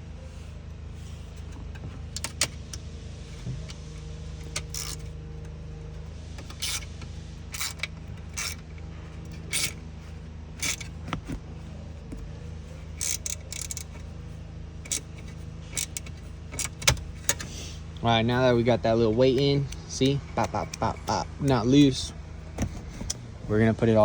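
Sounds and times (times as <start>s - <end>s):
steady low hum: 0.0s - 24.0s
metallic clicks and rattles: 3.4s - 5.6s, 6.4s - 9.8s, 10.6s - 11.4s, 12.9s - 14.1s, 14.8s - 17.6s, 18.8s - 23.3s.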